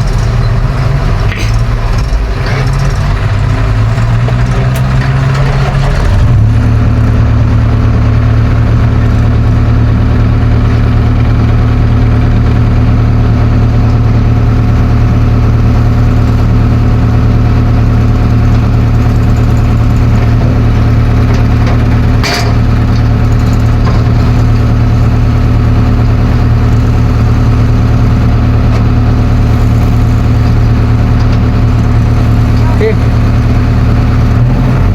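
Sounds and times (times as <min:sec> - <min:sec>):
diesel engine running: 0:00.0 - 0:34.9
metal clank: 0:21.3 - 0:23.0.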